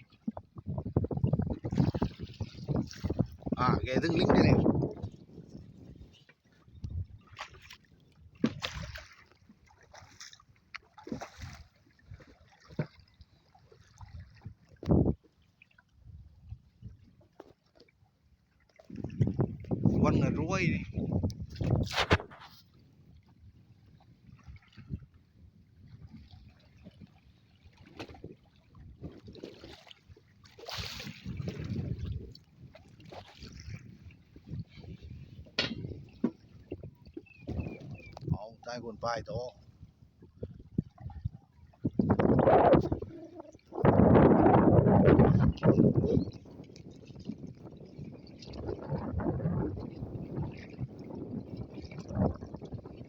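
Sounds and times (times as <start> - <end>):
water splashing against a boat: 0.0 - 53.0
knocks on a boat hull: 35.6 - 36.4.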